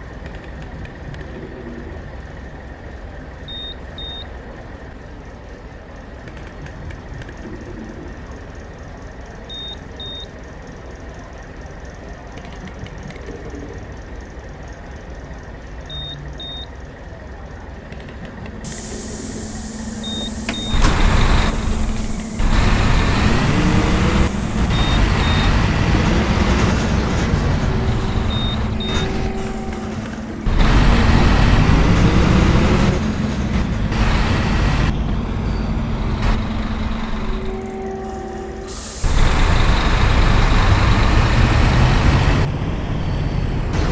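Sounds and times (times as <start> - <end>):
bus engine pulling away: 0.0 - 43.9
short paired electronic beeps: 15.9 - 16.7, 19.5 - 21.6, 24.7 - 25.6, 27.9 - 29.7
air brake hiss: 18.6 - 20.7, 38.6 - 39.4.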